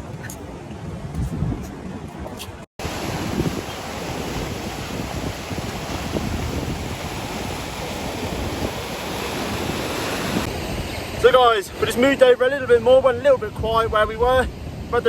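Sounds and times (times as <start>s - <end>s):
wind buffeting microphone: 0.0s - 12.3s
surf breaking: 2.8s - 13.2s.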